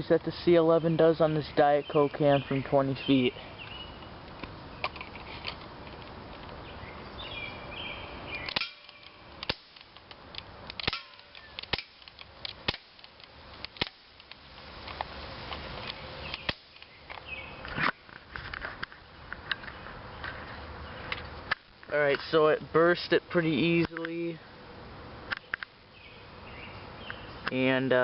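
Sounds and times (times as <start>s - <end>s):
airsoft pistol shots: 8.5s - 9.9s, 10.8s - 13.0s.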